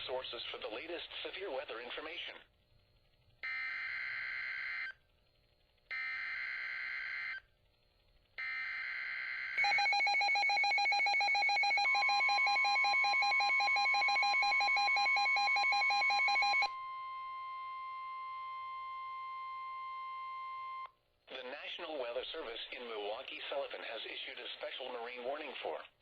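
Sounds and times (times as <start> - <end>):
rapidly pulsing alarm tones: 8.4 - 18.2.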